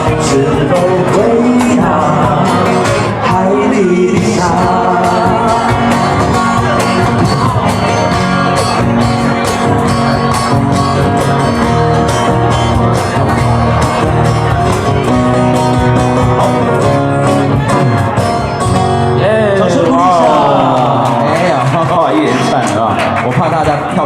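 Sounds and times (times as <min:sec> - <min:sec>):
instrumental band music: 0:00.0 - 0:23.3.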